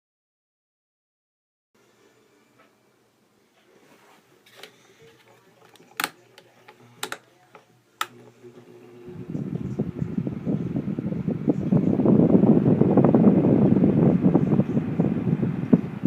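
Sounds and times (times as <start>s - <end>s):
fan motor rushing: 8.0s - 16.0s.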